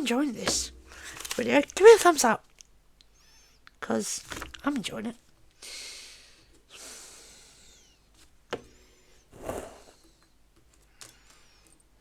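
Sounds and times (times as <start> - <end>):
plastic pieces rustling: 0.1 - 2.7, 4.2 - 4.9
sharp plastic clicks: 0.4 - 3.1.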